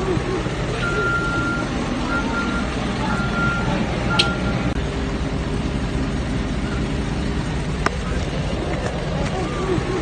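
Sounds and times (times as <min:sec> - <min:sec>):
engine and traffic noise: 0:00.0 - 0:10.0
reversing alarm beeps: 0:00.8 - 0:04.6.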